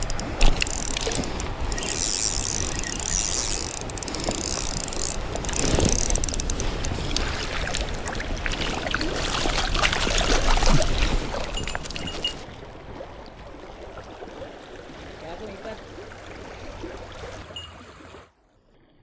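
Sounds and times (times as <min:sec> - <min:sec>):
fishing reel ratcheting clicks: 0:00.0 - 0:07.9.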